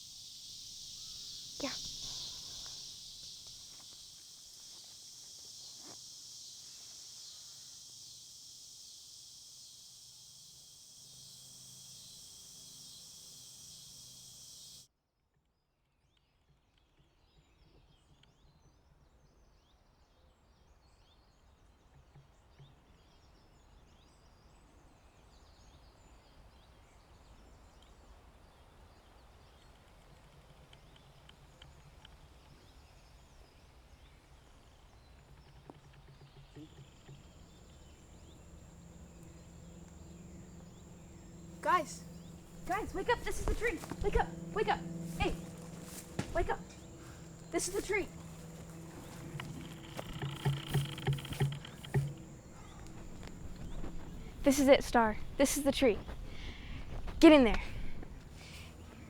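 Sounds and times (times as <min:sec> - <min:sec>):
faint bird chirps: 0:00.0 - 0:14.8, 0:36.3 - 0:59.0
insects chorus: 0:00.0 - 0:14.9, 0:25.3 - 0:59.0.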